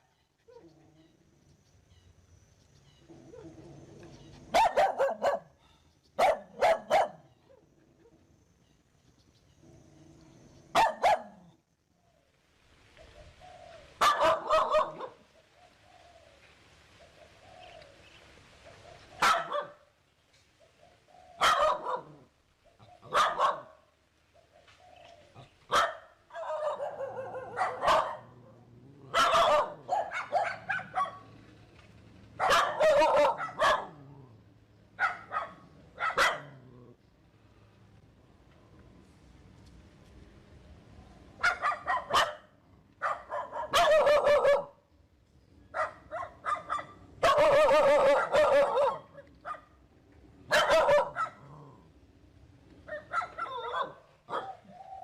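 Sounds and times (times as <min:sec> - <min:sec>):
dog barking: 0:04.5 - 0:07.3, 0:10.7 - 0:11.5, 0:14.0 - 0:15.2, 0:19.2 - 0:19.9, 0:21.4 - 0:22.3, 0:23.0 - 0:23.8, 0:25.7 - 0:28.4, 0:29.1 - 0:31.3, 0:32.4 - 0:34.0, 0:35.0 - 0:36.6, 0:41.4 - 0:44.8, 0:45.7 - 0:49.7, 0:50.5 - 0:51.7, 0:52.9 - 0:54.7.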